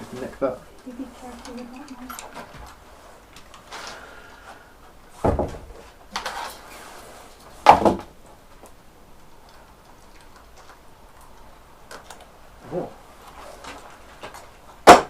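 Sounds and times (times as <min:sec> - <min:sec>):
sheet rustling and scraping: 0:00.0 - 0:07.7, 0:13.0 - 0:14.8.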